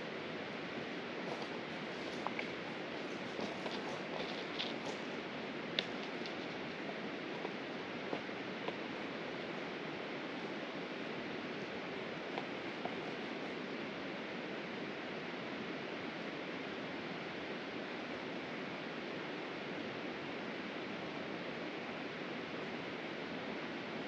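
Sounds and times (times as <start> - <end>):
river flowing over rocks: 0.0 - 24.0
faint clicks: 5.7 - 7.6.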